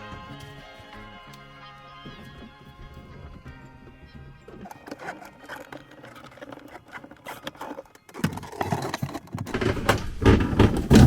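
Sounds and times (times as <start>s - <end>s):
handling knocks and thumps: 4.5s - 11.0s
light clicks and scraping: 4.6s - 11.0s.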